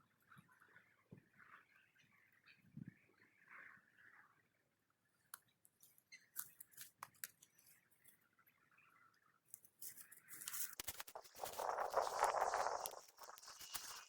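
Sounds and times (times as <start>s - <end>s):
rustling: 9.5s - 14.0s.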